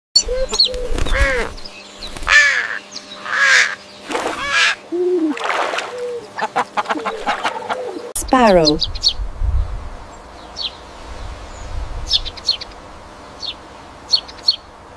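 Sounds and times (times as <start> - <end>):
crow cawing: 1.1 - 1.5, 2.3 - 4.8.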